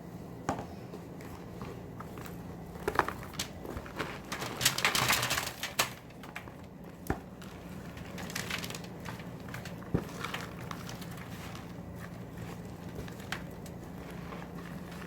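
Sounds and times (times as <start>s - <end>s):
popcorn poured onto baking sheet: 2.9s - 6.5s.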